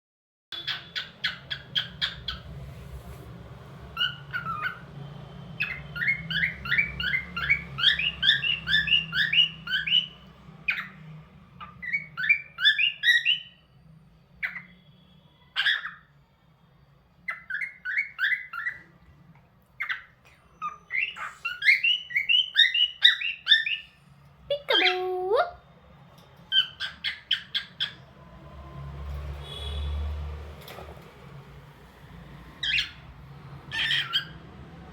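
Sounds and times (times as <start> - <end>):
cockatiel chirping: 0.5 - 2.6, 4.0 - 4.9, 5.6 - 11.0, 11.6 - 13.6, 14.4 - 16.1, 17.2 - 18.9, 19.8 - 24.0, 26.5 - 28.1, 32.6 - 33.1, 33.7 - 34.4.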